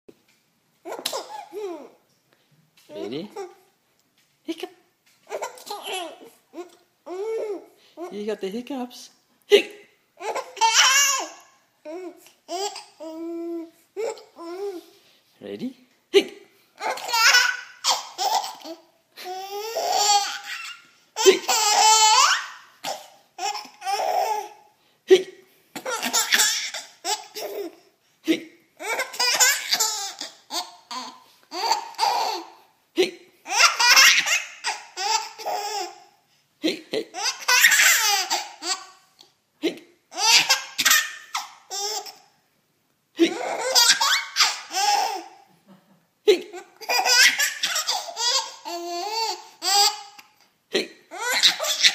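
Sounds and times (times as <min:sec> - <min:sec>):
small child laughing: 0:10.2 - 0:13.4, 0:16.8 - 0:24.5, 0:28.8 - 0:32.6, 0:33.4 - 0:36.0, 0:43.2 - 0:50.3, 0:51.1 - 0:51.9.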